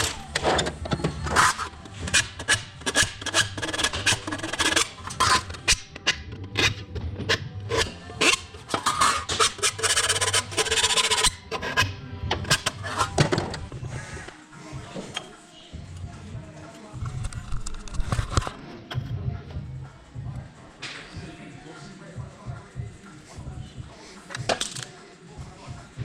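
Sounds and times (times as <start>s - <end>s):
rasping scrapes on metal: 0.0s - 13.3s
background music: 0.0s - 26.0s.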